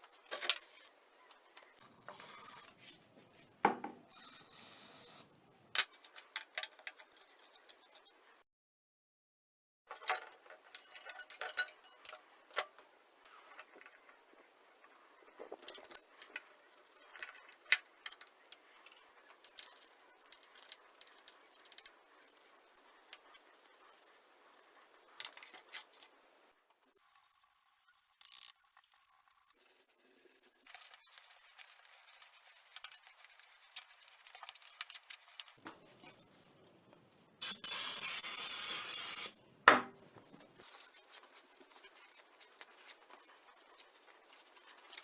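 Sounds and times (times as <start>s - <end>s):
small clicks taps and scrapes: 28.0s - 36.3s.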